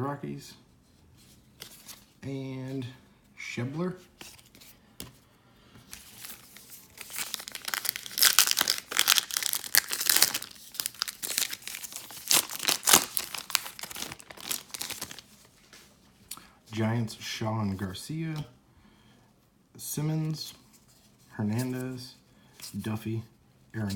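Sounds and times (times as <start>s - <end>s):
wrapper crinkling and tearing: 6.0s - 15.5s.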